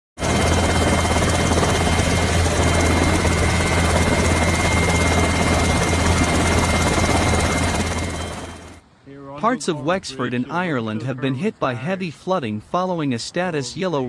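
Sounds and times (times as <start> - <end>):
helicopter engine and rotor: 0.2 - 8.8.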